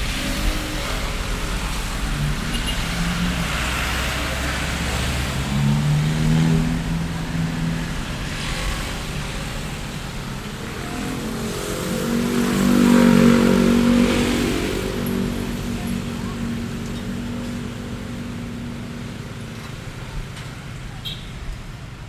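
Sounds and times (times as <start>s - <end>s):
vehicle engines passing: 0.0s - 22.0s.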